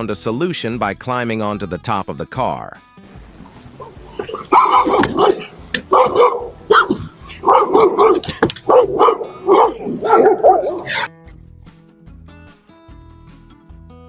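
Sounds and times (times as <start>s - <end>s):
quiet background music: 0.0s - 14.0s
dogs barking: 3.1s - 11.1s.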